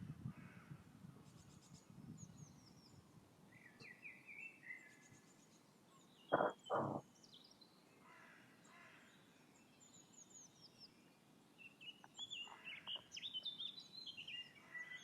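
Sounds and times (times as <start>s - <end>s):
faint outdoor background noise: 0.0s - 15.0s
birds chirping and singing: 11.6s - 15.0s.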